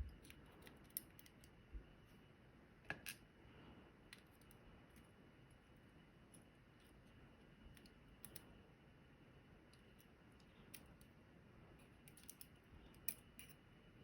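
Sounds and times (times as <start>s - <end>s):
small metallic clicks of lock pins: 0.2s - 1.6s, 7.7s - 8.5s, 9.7s - 11.1s, 12.0s - 13.6s.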